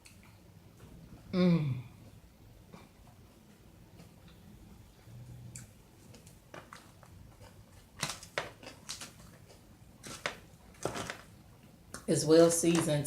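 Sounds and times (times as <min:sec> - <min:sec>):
chewing: 0:05.2 - 0:11.2.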